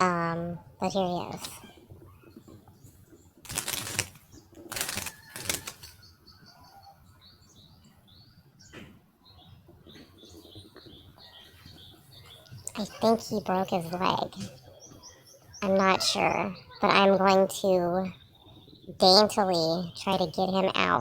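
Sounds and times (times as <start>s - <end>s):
bird wings flapping: 3.4s - 6.1s
faint high bird chirps: 3.6s - 21.0s.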